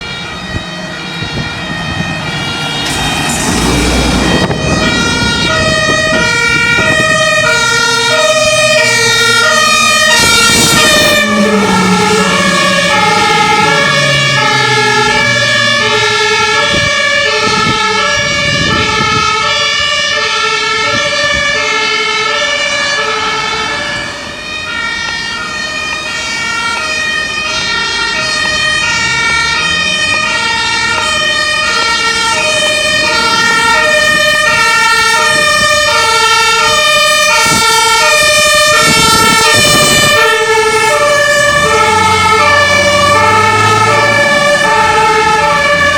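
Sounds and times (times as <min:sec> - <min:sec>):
two-tone sirens: 0:00.0 - 0:45.9
vehicle engines passing: 0:00.0 - 0:45.9
loud noisy blasts: 0:00.4 - 0:21.8.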